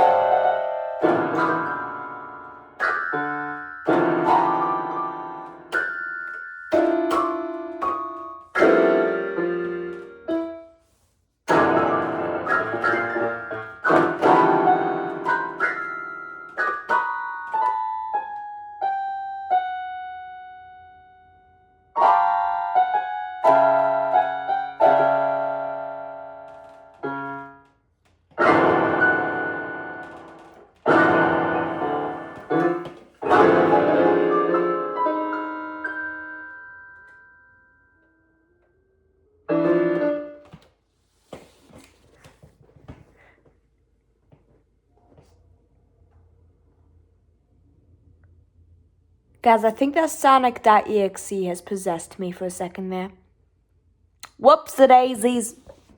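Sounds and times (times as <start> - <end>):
piano chords: 0.0 - 10.7, 11.5 - 27.7, 28.4 - 38.1, 39.5 - 40.6.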